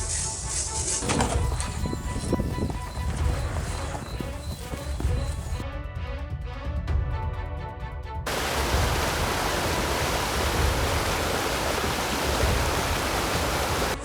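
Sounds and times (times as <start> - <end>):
steady hiss: 8.3 - 14.0.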